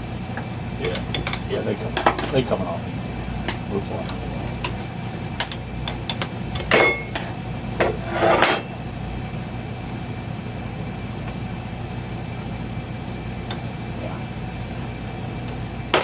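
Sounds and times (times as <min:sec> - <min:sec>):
steady low hum: 0:00.0 - 0:16.0
ringing metal-on-metal strikes: 0:06.7 - 0:07.2.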